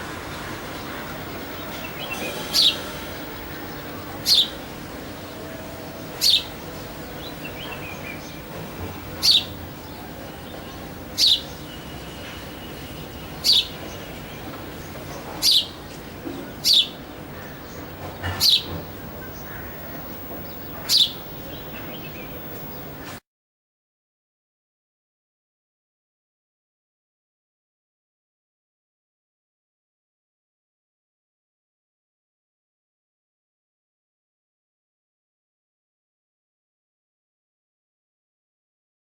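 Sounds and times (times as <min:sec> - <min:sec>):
steady background noise: 0:00.0 - 0:23.2
sparrow chirping: 0:00.3 - 0:23.1.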